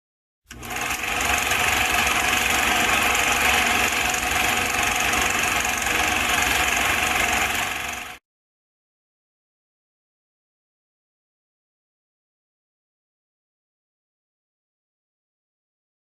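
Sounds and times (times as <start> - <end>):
steady mechanical running noise: 0.5 - 8.2.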